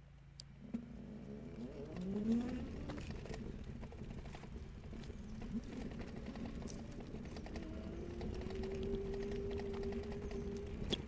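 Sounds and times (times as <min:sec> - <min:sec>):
low steady rumble: 0:00.0 - 0:11.0
dove cooing: 0:04.6 - 0:11.0.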